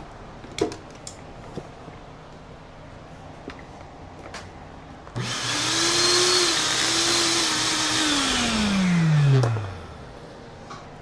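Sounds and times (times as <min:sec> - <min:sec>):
blender motor whining: 0:05.2 - 0:10.0.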